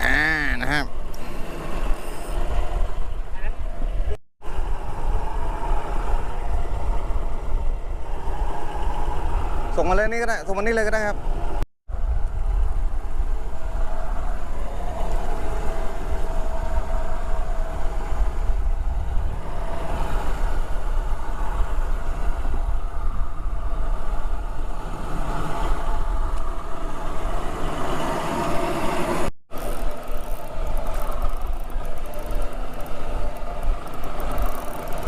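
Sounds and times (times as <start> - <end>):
boat engine rumbling: 0.0 - 35.0.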